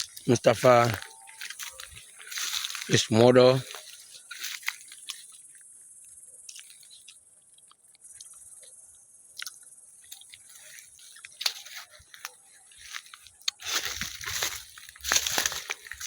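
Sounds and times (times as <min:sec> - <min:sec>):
footsteps crunching dry vegetation: 0:00.0 - 0:05.6, 0:10.1 - 0:16.0.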